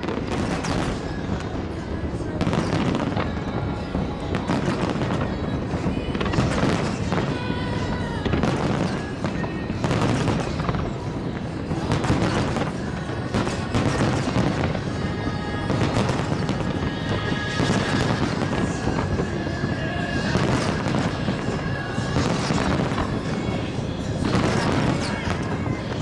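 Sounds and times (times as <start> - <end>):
fireworks bursting with sharp bangs: 0.0 - 26.0
fireworks rumble and crackle: 0.0 - 26.0
music playing: 0.0 - 26.0.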